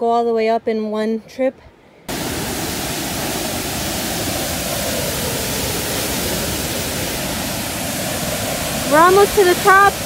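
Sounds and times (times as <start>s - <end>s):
waterfall rushing: 2.1s - 10.0s.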